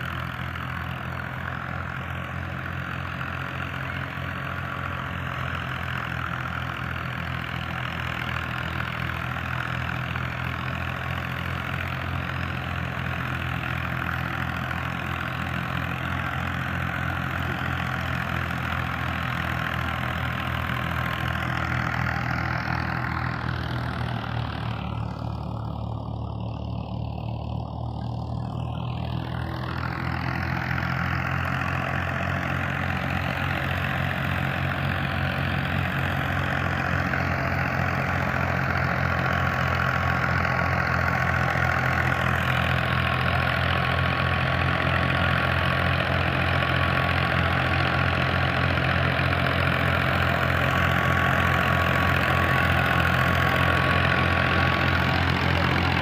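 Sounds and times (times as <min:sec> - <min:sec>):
farm machinery engine running: 0:00.0 - 0:56.0.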